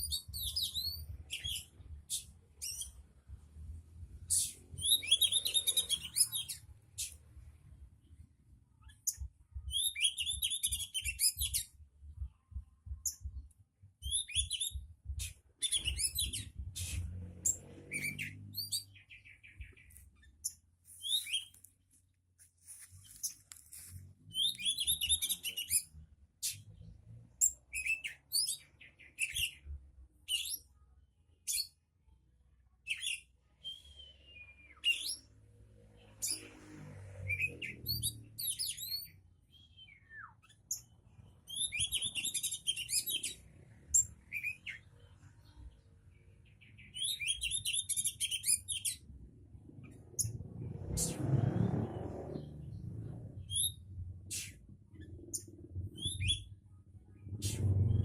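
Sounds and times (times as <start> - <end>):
songbird chirping: 4.2 - 31.8.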